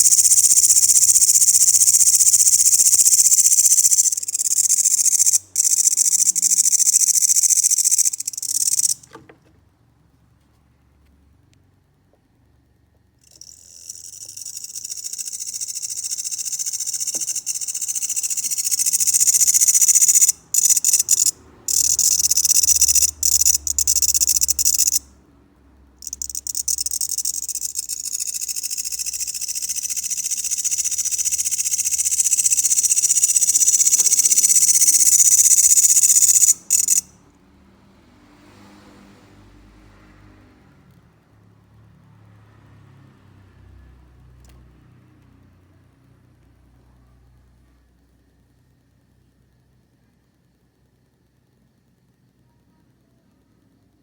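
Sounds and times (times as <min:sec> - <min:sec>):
grasshopper stridulating: 0:00.0 - 0:09.1, 0:13.2 - 0:25.1, 0:26.0 - 0:37.1.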